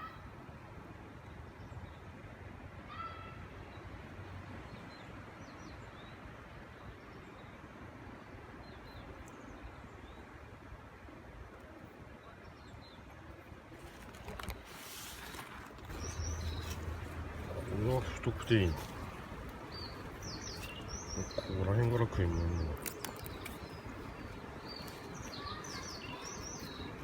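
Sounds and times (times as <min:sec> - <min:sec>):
steady background noise: 0:00.0 - 0:27.0
short bird calls: 0:15.8 - 0:27.0.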